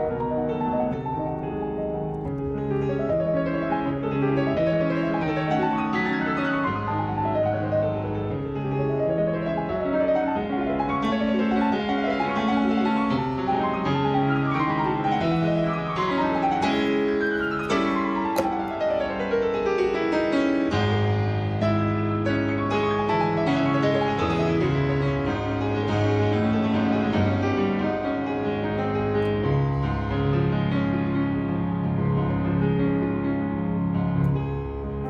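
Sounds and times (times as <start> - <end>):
piano music: 0.0 - 11.0.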